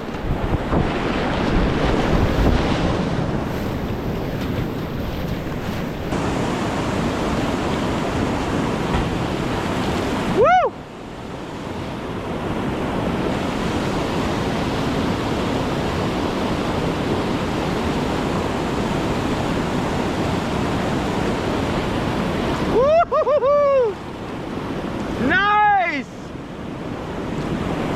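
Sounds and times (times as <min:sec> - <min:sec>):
wind noise on microphone: 0:00.0 - 0:10.4
river water rushing: 0:00.0 - 0:27.9.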